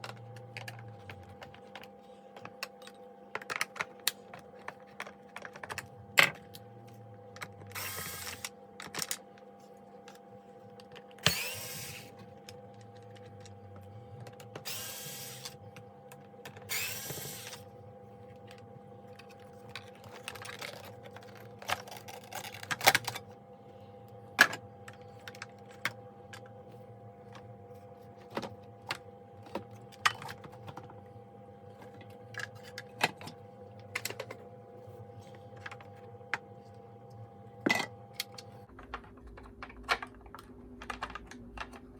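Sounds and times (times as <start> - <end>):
power screwdriver whirring: 7.8 - 8.4, 11.2 - 12.1, 14.7 - 15.5, 16.7 - 17.6
plastic parts clicking and knocking: 38.7 - 41.9.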